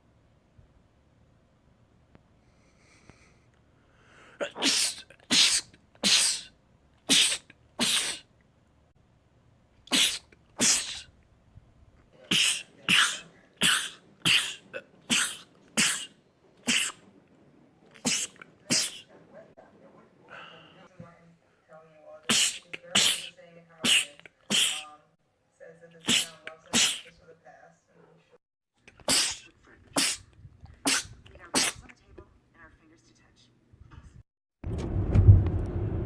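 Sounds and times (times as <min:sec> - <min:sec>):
man sneezing: 0:04.4 - 0:06.5, 0:07.1 - 0:08.2, 0:09.9 - 0:11.1, 0:12.3 - 0:17.0, 0:18.0 - 0:19.0, 0:22.3 - 0:24.9, 0:26.1 - 0:27.1, 0:29.0 - 0:30.2, 0:30.9 - 0:31.8.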